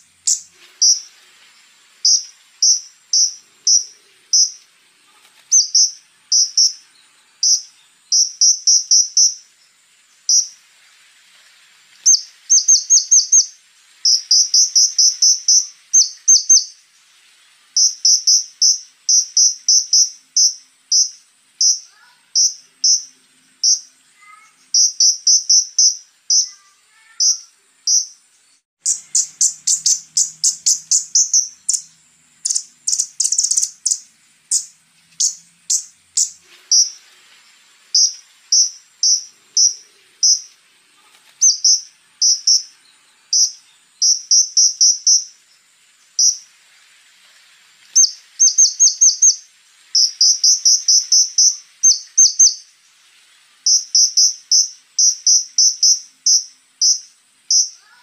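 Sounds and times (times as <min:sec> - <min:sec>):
bird ticking song: 0:00.0 - 0:01.1, 0:02.0 - 0:04.7, 0:05.4 - 0:10.6, 0:12.0 - 0:16.8, 0:17.8 - 0:26.6, 0:27.2 - 0:37.0, 0:38.0 - 0:40.6, 0:41.4 - 0:45.4, 0:46.1 - 0:46.4, 0:47.9 - 0:49.4, 0:50.0 - 0:52.7, 0:53.7 - 0:57.9.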